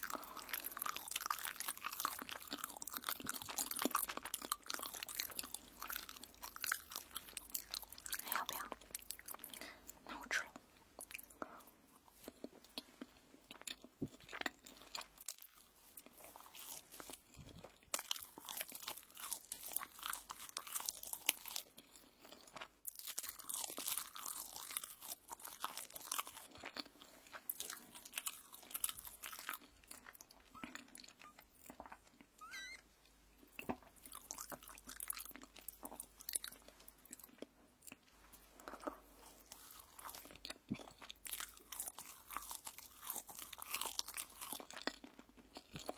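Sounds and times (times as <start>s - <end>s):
crunchy toast bites and chewing: 0.0s - 32.4s, 33.1s - 45.9s.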